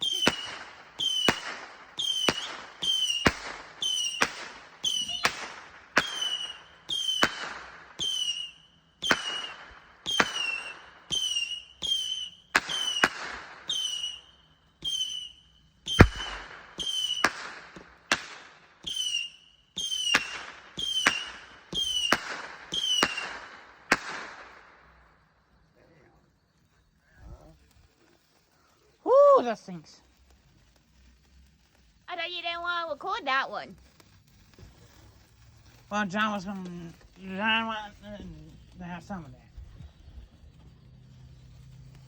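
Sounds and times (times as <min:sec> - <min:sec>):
firework whistle: 0:00.0 - 0:25.6, 0:26.5 - 0:42.0
firework bangs: 0:00.0 - 0:42.0
firework crackle: 0:00.0 - 0:42.0.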